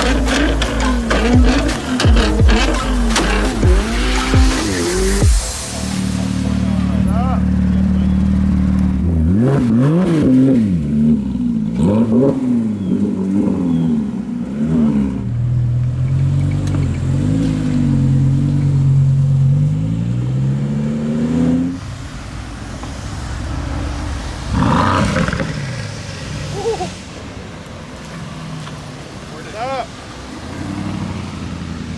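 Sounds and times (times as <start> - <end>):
car engine idling and revving: 0.0 - 31.9.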